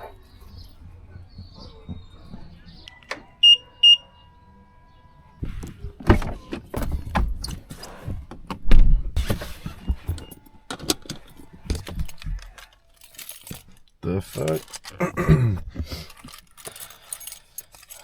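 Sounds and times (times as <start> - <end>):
objects clattering and rattling: 5.4 - 18.0.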